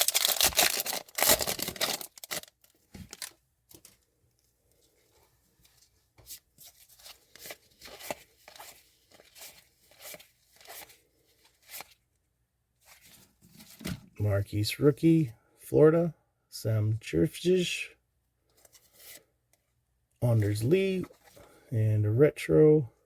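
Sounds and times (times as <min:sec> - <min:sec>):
cards and wrapper rustling: 0:00.0 - 0:04.1, 0:06.3 - 0:12.0.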